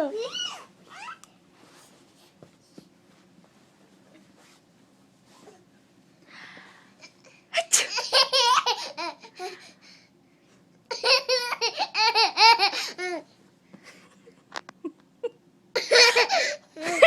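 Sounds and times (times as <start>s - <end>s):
baby sneezing: 7.6s - 8.1s.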